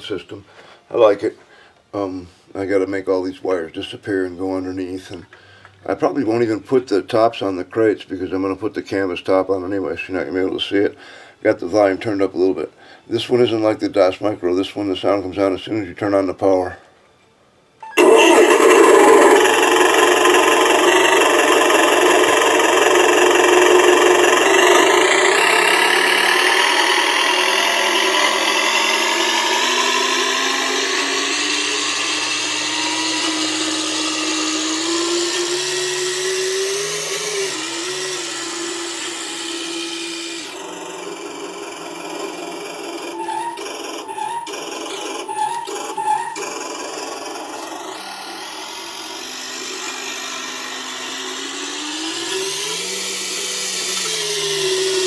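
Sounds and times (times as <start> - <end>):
motor-like whine from speakers: 17.9 - 55.0.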